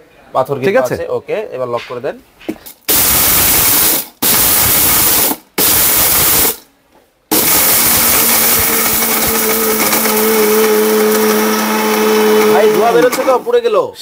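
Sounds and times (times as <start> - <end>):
mixer grinder grinding stones: 7.3 - 13.6.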